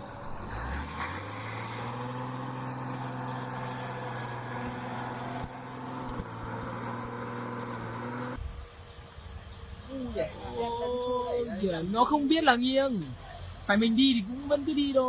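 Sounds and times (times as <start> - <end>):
large vehicle engine running: 0.0 - 9.8.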